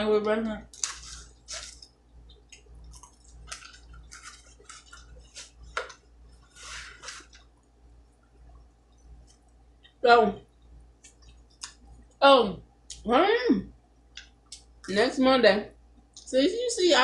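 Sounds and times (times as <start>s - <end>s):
faint low hum: 0.0s - 17.0s
chewing and mouth sounds: 0.7s - 6.0s, 10.5s - 12.2s.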